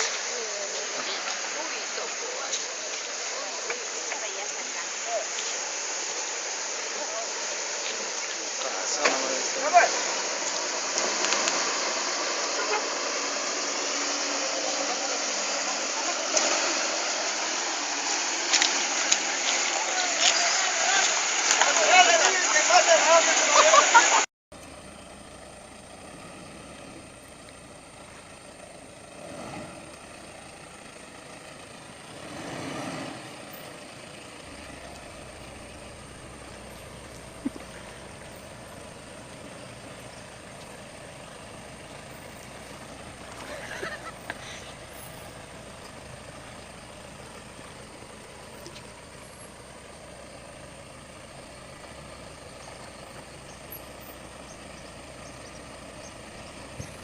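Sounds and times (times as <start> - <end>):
heavy vehicle engine running: 0.0 - 57.0.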